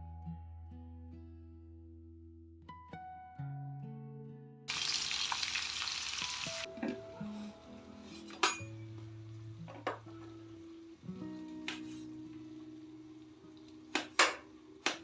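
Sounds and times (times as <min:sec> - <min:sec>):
food sizzling in a pan: 0:04.7 - 0:15.0
utensil clinking against pan: 0:08.0 - 0:08.8.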